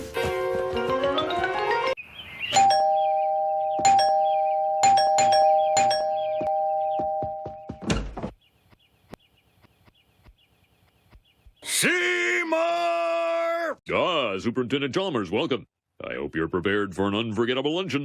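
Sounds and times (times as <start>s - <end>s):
two-tone doorbell chime: 2.6s - 7.7s.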